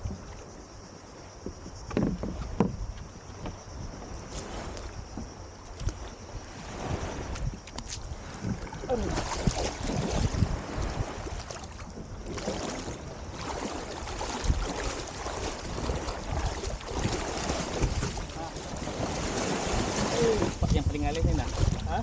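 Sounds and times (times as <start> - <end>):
water lapping against hull: 0.0 - 22.0
wind buffeting microphone: 0.0 - 22.0
small knocks: 1.4 - 3.6.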